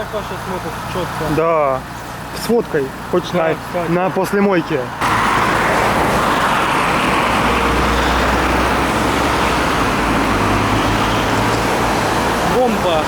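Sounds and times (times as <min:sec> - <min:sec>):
loud rushing noise: 0:05.0 - 0:13.0.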